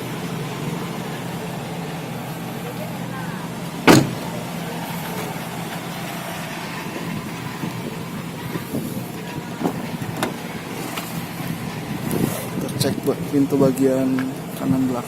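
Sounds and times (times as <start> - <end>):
car door shutting thud: 3.8 - 4.4, 9.6 - 10.4.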